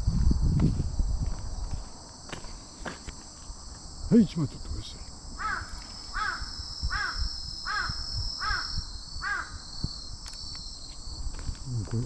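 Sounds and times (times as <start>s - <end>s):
insects trilling: 0.0s - 12.0s
crow cawing: 5.4s - 9.7s.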